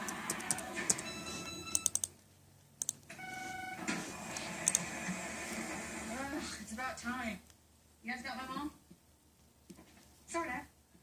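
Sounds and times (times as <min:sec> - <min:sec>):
sharp clicks: 0:01.7 - 0:02.1, 0:02.8 - 0:03.1.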